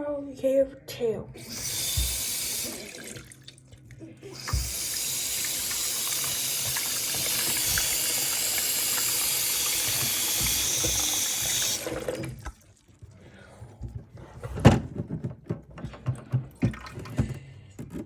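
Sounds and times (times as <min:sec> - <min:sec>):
water running in a stream: 0:04.4 - 0:13.2.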